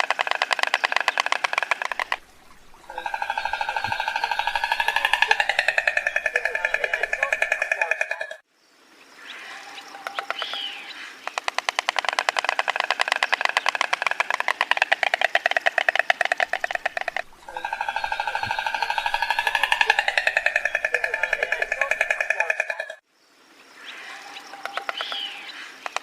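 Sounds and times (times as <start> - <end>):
stork bill clattering: 0.0 - 8.4, 11.3 - 23.0.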